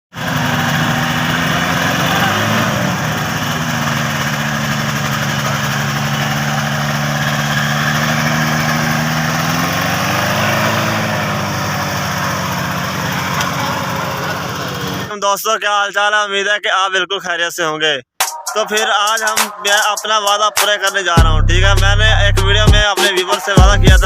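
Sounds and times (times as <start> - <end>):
vehicle engine running: 0.1 - 15.1, 21.2 - 22.9.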